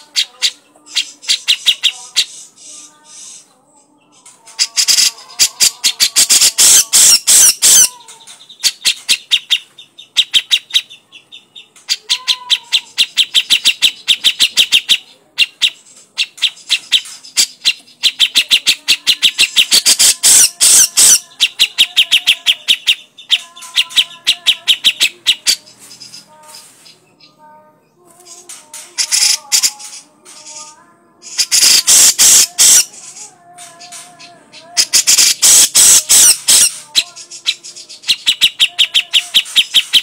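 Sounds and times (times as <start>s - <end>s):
bird chattering call: 4.6s - 11.0s, 11.9s - 26.3s, 29.0s - 30.0s, 31.3s - 32.9s, 33.8s - 40.0s.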